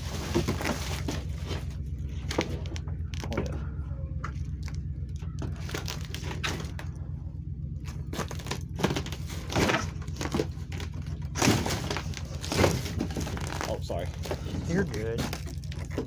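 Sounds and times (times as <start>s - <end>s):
vehicle engine running: 0.0s - 16.0s
wooden boards creaking and cracking: 4.4s - 7.0s, 7.8s - 16.0s.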